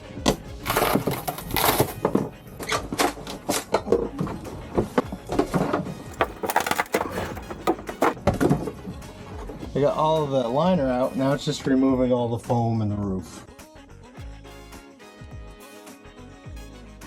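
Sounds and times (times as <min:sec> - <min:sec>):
foam insulation crunching and cracking: 0:00.6 - 0:03.8, 0:04.9 - 0:08.2.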